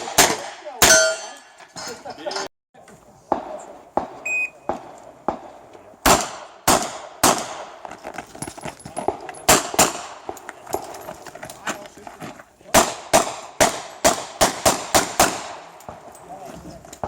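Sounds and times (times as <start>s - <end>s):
shot timer beep: 4.3s - 4.6s.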